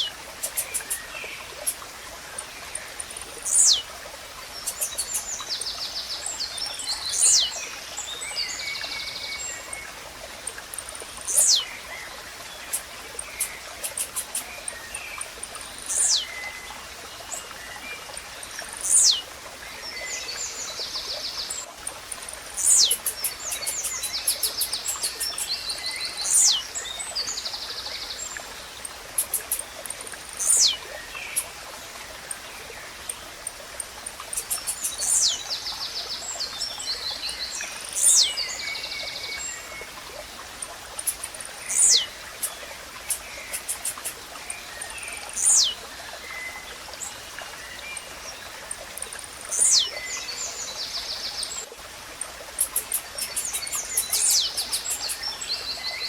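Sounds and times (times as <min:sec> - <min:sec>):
fast high ticking and buzzy chirps: 0:00.0 - 0:02.0, 0:04.5 - 0:05.4, 0:12.6 - 0:16.3, 0:21.8 - 0:25.6, 0:28.9 - 0:31.6, 0:33.1 - 0:35.3, 0:40.8 - 0:44.3, 0:52.5 - 0:55.3
running water rush: 0:00.0 - 0:56.0.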